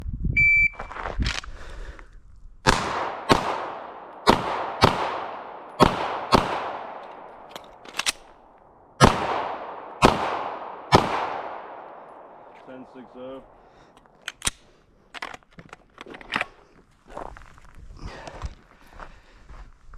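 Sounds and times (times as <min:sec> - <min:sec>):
shot timer beep: 0:00.4 - 0:00.9
gunshots echoing: 0:02.6 - 0:08.3, 0:09.0 - 0:13.6.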